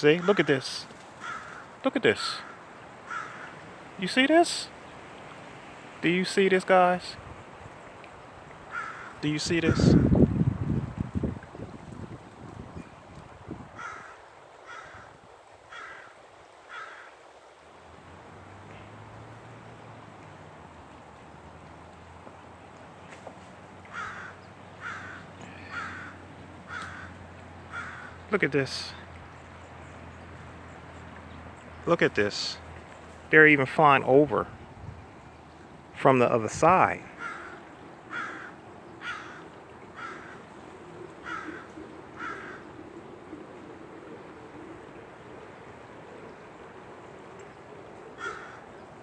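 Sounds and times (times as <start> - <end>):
bird cawing: 0.2 - 1.8, 2.4 - 3.8, 8.7 - 10.2, 13.8 - 17.2, 23.8 - 28.3, 37.0 - 43.0, 48.1 - 48.8.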